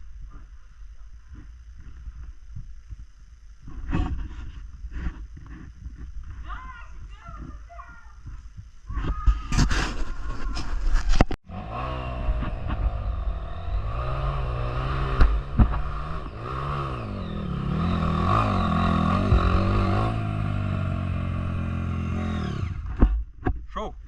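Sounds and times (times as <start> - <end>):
motorcycle engine revving: 11.0 - 23.1.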